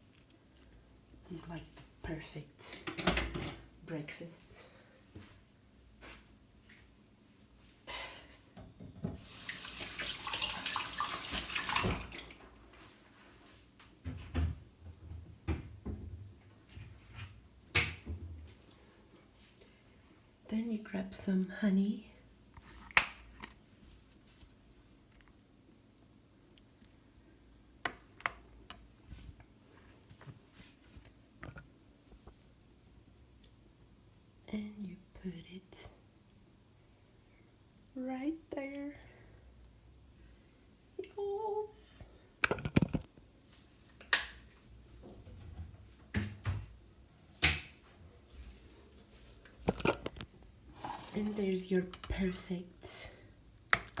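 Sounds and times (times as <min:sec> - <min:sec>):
faint low hum: 0:12.0 - 0:54.0.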